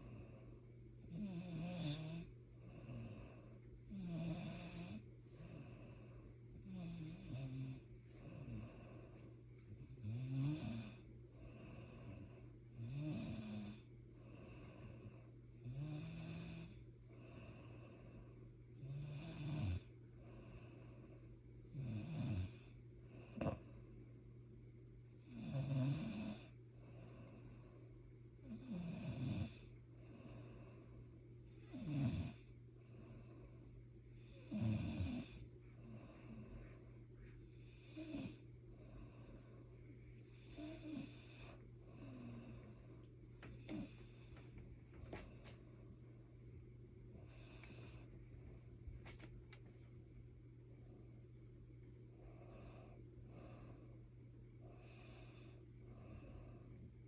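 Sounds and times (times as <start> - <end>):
quiet breathing: 0.0 - 57.0
person snoring: 1.1 - 9.2, 9.8 - 18.2, 18.8 - 21.0, 21.7 - 23.8, 25.2 - 27.8, 28.4 - 31.0, 31.6 - 33.6, 34.2 - 39.6, 40.3 - 44.4.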